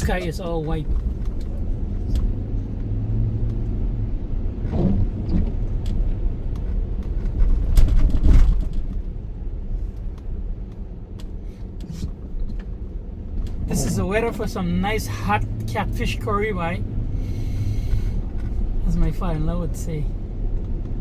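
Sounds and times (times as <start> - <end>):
car road noise rumble: 0.0 - 21.0.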